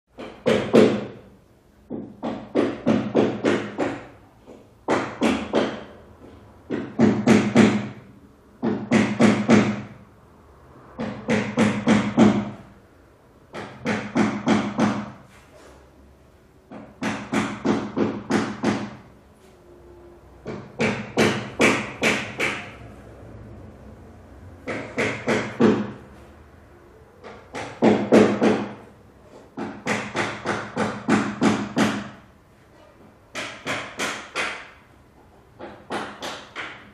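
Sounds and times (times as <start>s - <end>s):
hammer striking: 20.4s - 22.8s, 33.3s - 34.8s.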